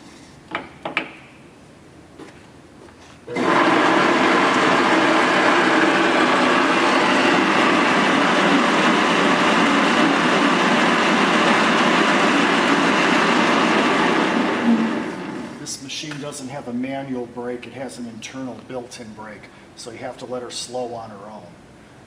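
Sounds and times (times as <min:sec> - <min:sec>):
lathe running at high speed: 0:03.3 - 0:15.6.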